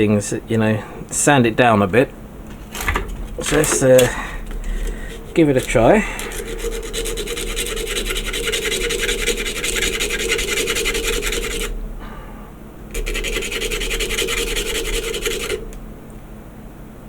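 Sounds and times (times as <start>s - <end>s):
plastic being sanded: 2.5s - 11.8s, 12.9s - 15.8s.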